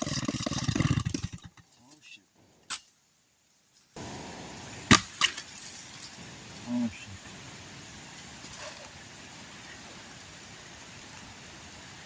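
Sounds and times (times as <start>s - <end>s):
wood splitting cracks: 0.0s - 1.6s, 4.9s - 5.9s.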